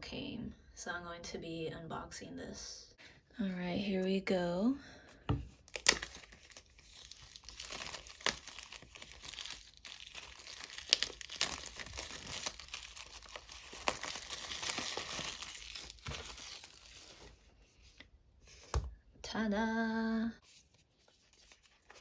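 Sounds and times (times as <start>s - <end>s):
packaging crinkling and tearing: 5.6s - 17.4s.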